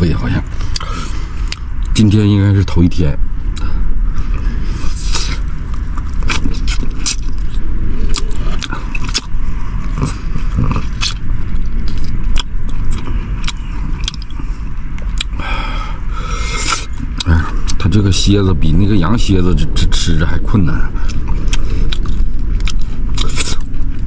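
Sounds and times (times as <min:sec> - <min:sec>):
low rumble inside a car: 0:00.0 - 0:24.0
chewing and crunching bones: 0:03.6 - 0:17.8, 0:21.0 - 0:24.0.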